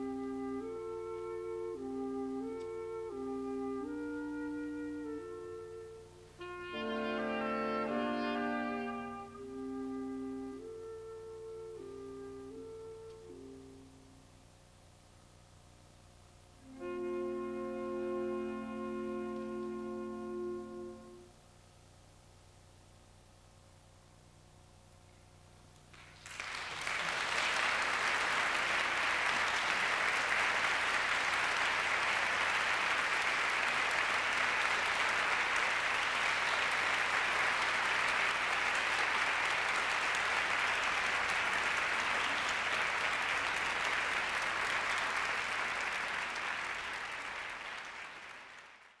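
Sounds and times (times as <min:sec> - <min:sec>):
audience applauding: 0:25.9 - 0:49.0.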